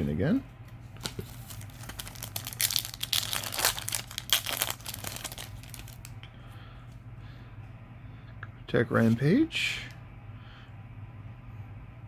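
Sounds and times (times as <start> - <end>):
foil wrapper tearing and crinkling: 1.0 - 6.1.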